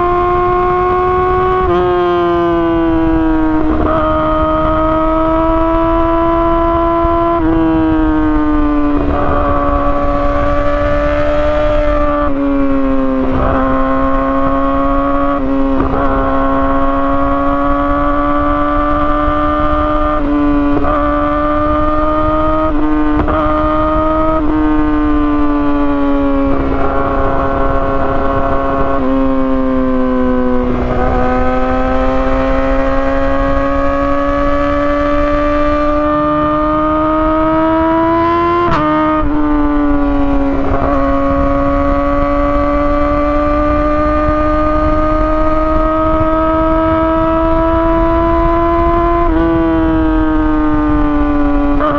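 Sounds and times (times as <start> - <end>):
motorcycle engine at high revs: 0.0 - 51.9.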